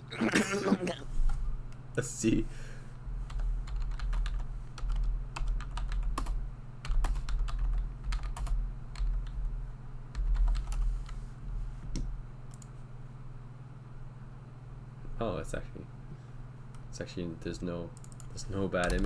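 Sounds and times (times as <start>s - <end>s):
steady low hum: 0.0s - 19.0s
keyboard typing: 3.3s - 11.2s, 18.0s - 19.0s.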